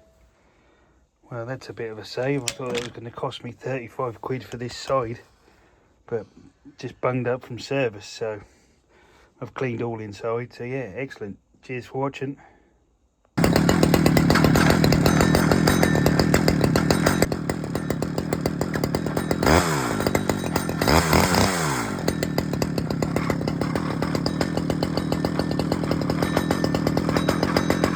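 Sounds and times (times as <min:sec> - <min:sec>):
chainsaw idling and revving: 0:02.4 - 0:02.9, 0:13.4 - 0:27.9.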